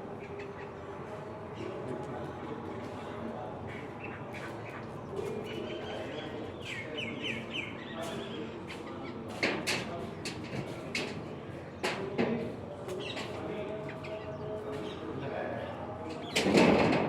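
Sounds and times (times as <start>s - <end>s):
steady background noise: 0.0s - 17.0s.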